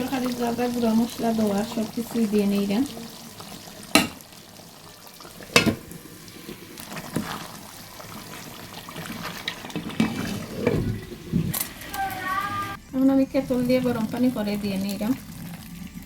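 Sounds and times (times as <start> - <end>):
curry sizzling in a pot: 0.0 - 16.0
spoon knocking against pot: 3.9 - 4.2, 5.5 - 5.8.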